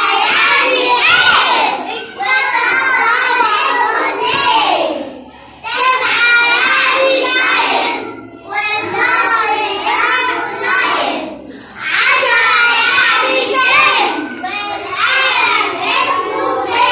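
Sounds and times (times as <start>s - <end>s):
young children singing: 0.0s - 16.9s.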